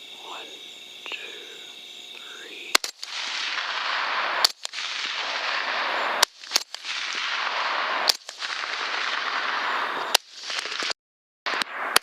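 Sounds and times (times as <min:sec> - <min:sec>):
steady hiss: 0:00.0 - 0:10.9
rifle shots: 0:02.7 - 0:12.0.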